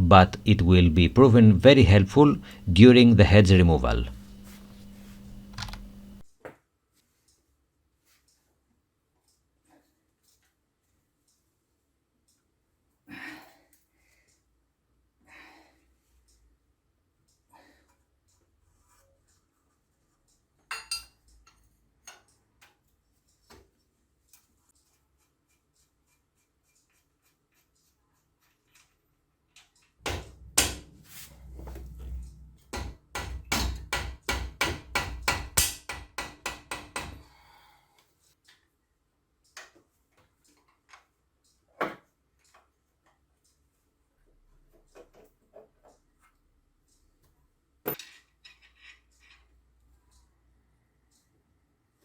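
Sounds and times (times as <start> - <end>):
rapid metallic clicks and knocks: 32.6 - 37.2.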